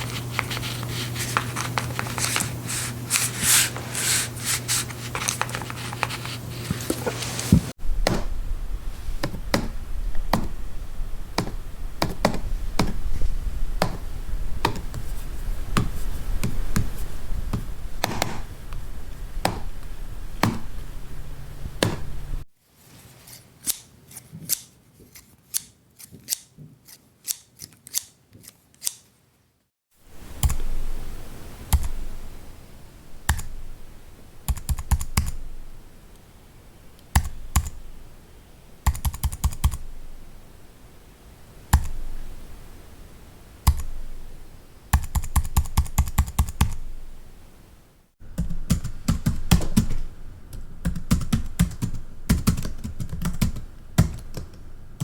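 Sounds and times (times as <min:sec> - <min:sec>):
low background hum: 0:00.0 - 0:25.9, 0:30.0 - 0:55.0
scissor snips: 0:23.3 - 0:29.1
slow typing on a keyboard: 0:38.9 - 0:39.8.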